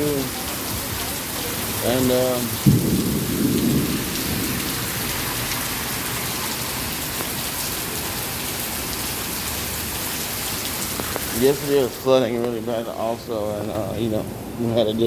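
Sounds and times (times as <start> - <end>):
heavy rain falling: 0.0 - 15.0
thunder crack rumbling: 1.8 - 7.6.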